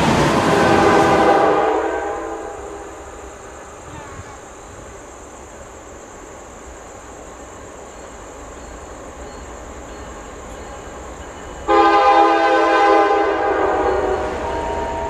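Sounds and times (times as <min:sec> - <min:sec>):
insects droning: 0:00.0 - 0:15.0.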